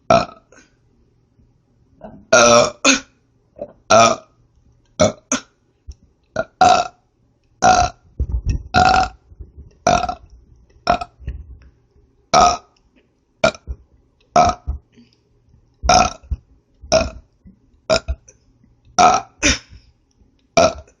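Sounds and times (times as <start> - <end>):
woman burping: 2.0 - 4.3, 15.9 - 16.3, 19.0 - 19.8.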